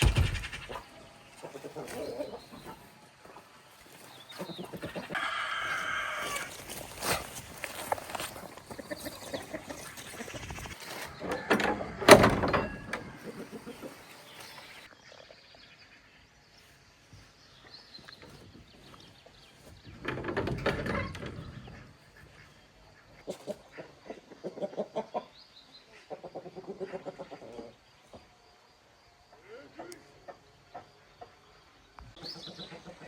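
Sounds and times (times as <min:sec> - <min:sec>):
rapid pulsed bird calls: 0:00.0 - 0:02.8, 0:08.6 - 0:11.3
farmyard animal calls: 0:00.0 - 0:15.2, 0:18.2 - 0:27.8, 0:29.3 - 0:31.4, 0:32.2 - 0:33.0.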